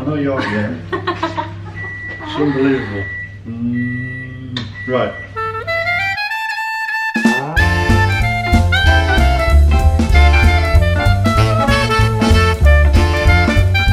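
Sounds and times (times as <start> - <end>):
upbeat jazz band: 5.4 - 13.9.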